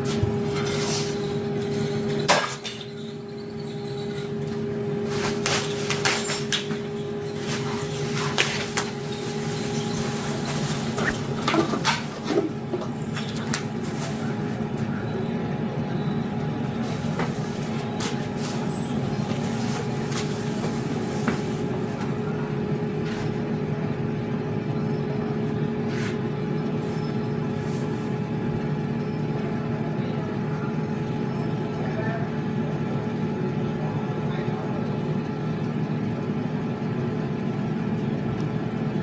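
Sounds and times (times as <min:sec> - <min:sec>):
steady machine hum: 0:00.0 - 0:39.0.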